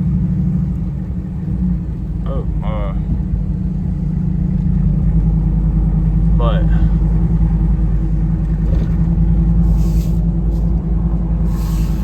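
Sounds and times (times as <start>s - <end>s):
truck engine and road drone: 0.0s - 12.0s
short hisses: 9.6s - 10.6s, 11.4s - 12.0s.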